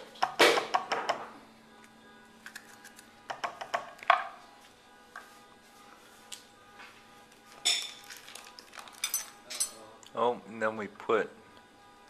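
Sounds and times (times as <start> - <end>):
utensil tapping on cutting board: 3.3 - 4.2.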